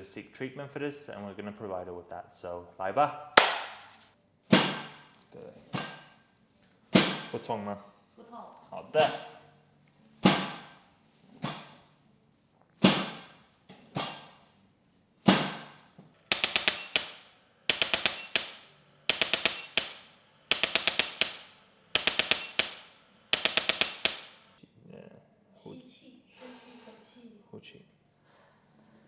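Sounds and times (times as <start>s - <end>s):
sharp ringing percussive strikes: 16.3s - 24.5s.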